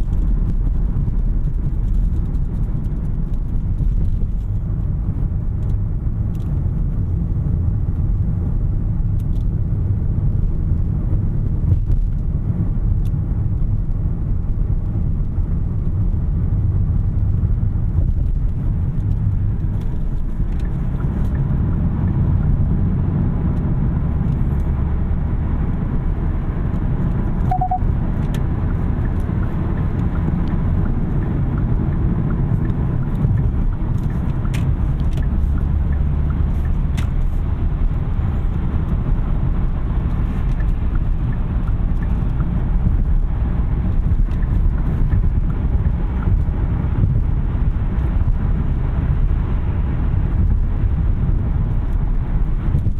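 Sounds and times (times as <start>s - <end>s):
road and tyre rumble: 0.0s - 52.9s
high beep: 27.5s - 27.9s.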